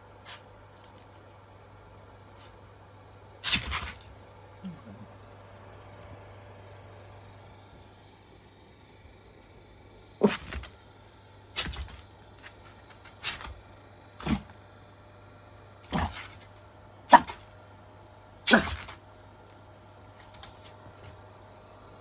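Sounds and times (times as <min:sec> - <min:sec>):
fan heater humming: 0:00.0 - 0:22.0
small dog barking: 0:10.2 - 0:10.7, 0:15.9 - 0:16.4, 0:17.1 - 0:17.5, 0:18.5 - 0:19.0.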